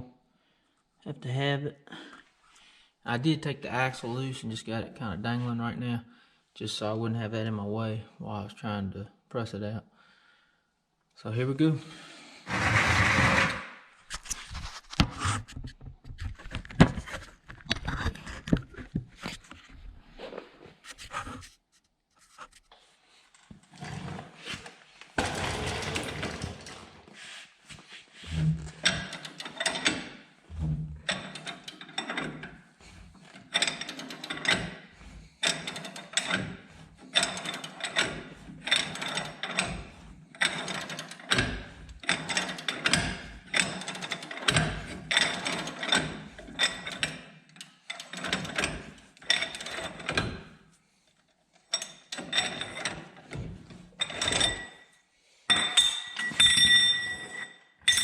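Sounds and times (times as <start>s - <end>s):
ringing metal clinks: 55.5s - 58.0s.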